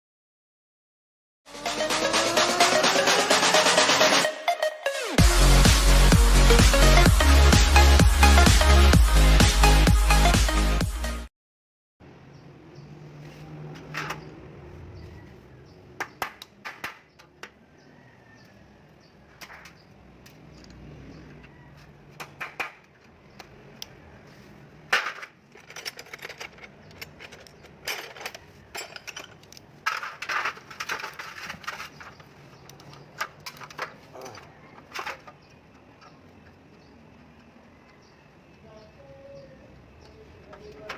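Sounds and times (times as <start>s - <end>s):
metal tools clinking and knocking: 24.9s - 36.6s.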